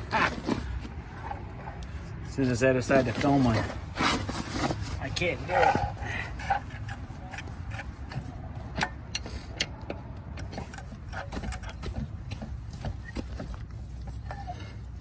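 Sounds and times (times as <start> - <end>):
hand tools clicking on metal: 6.4 - 13.3.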